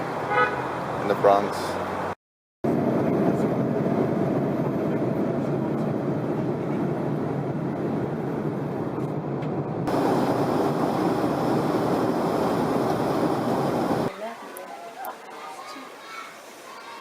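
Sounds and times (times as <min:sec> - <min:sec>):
subway train rumbling: 0:02.7 - 0:14.1.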